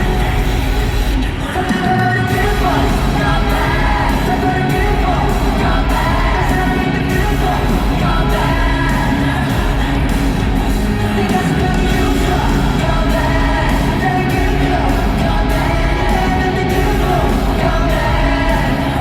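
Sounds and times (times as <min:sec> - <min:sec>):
loud pop music with singing: 0:00.0 - 0:19.0.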